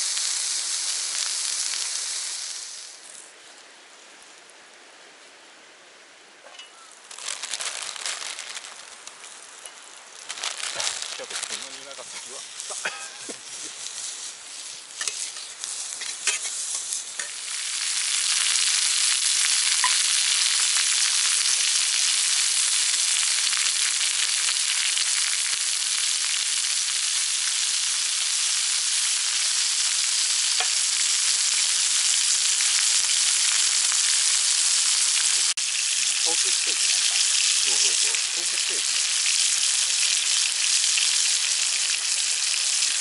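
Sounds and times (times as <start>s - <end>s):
meat sizzling in a skillet: 0.0s - 4.4s, 7.0s - 43.0s
clicks and crackles: 6.5s - 13.8s.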